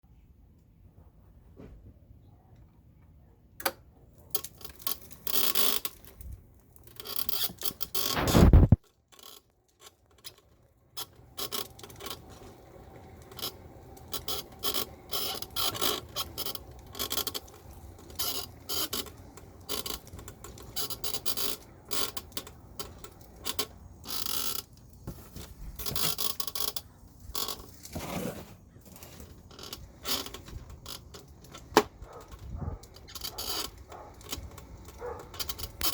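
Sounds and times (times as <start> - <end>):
wheelchair creaking and clicking: 3.6 - 35.9
seat post squeaking: 25.8 - 26.8, 29.5 - 35.9.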